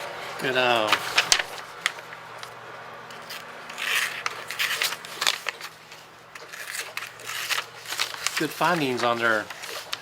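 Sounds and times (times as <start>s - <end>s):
knife slicing paper: 3.7s - 5.8s, 6.5s - 10.0s.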